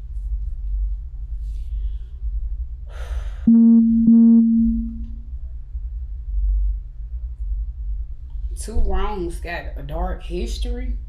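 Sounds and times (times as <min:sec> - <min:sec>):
loud pitched tones: 0:03.5 - 0:05.1.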